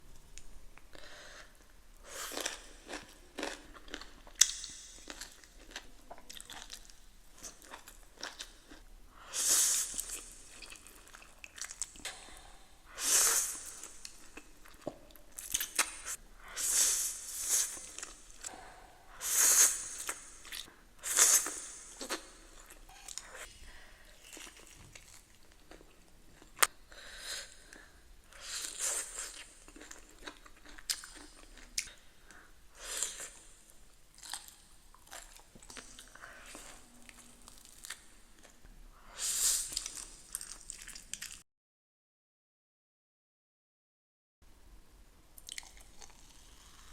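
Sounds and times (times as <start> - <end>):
crunching and chewing food: 1.4 - 8.8, 9.8 - 12.6, 17.4 - 18.6, 24.1 - 26.8, 27.6 - 33.5, 34.1 - 38.6, 39.6 - 41.4, 45.4 - 46.9.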